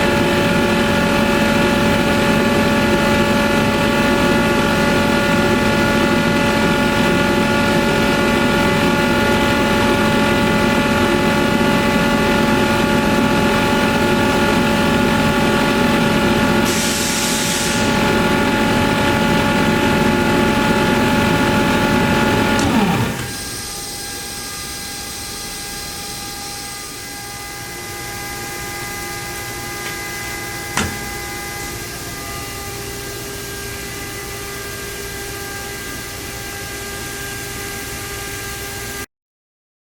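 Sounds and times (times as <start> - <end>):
air compressor humming: 0.0 - 37.1
compressor winding down: 0.0 - 38.8
air hiss: 16.6 - 18.1.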